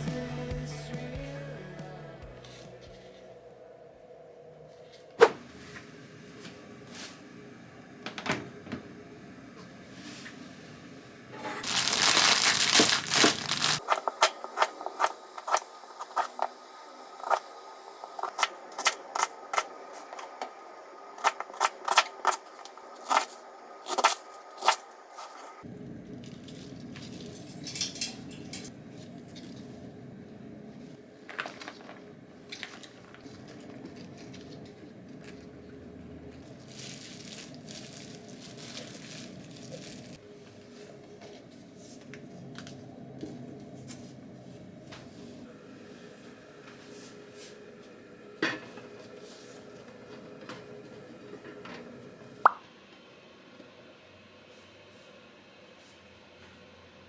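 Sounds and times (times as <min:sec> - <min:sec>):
crinkling and rustling: 0:11.5 - 0:17.4, 0:21.2 - 0:25.6, 0:31.2 - 0:35.5, 0:36.4 - 0:40.2.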